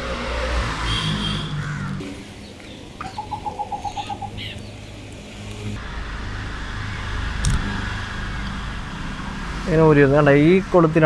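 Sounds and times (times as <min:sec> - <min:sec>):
bird calling: 0:01.3 - 0:05.0.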